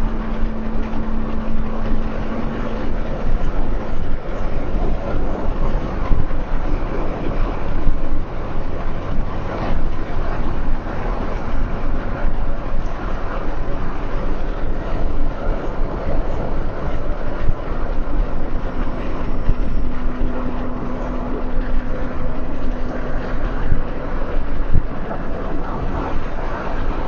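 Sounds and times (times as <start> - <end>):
car road and engine noise: 0.0 - 27.0
faint steady hum: 0.0 - 27.0.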